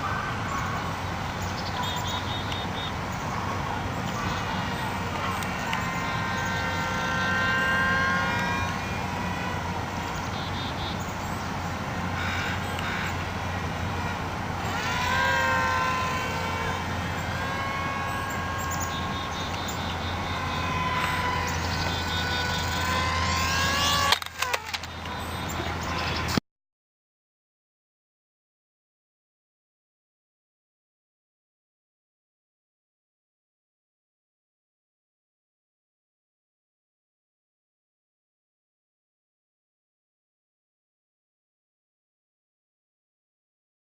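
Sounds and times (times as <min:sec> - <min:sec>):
small electric motors whining: 0:00.0 - 0:26.4
steady low hum: 0:00.0 - 0:26.4.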